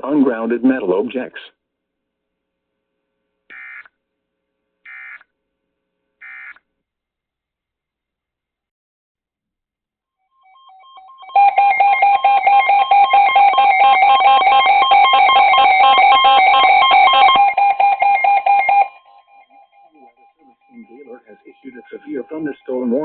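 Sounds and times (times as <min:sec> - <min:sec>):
faint broken beeps: 0:10.6 - 0:23.0.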